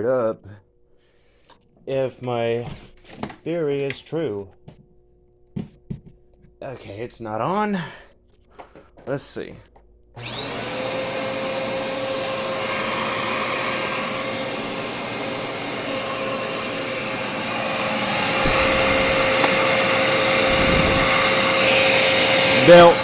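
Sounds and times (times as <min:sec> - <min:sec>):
vacuum cleaner motor whine: 0:10.2 - 0:23.0.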